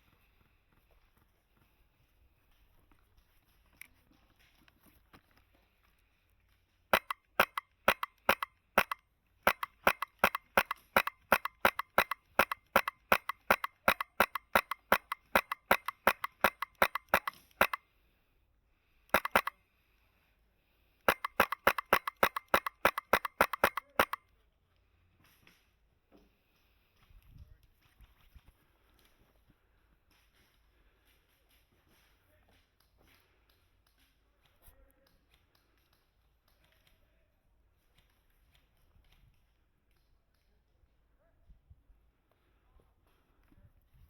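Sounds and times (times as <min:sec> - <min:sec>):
airsoft rifle shots popping: 0:07.0 - 0:17.8, 0:19.1 - 0:19.5, 0:21.1 - 0:24.2.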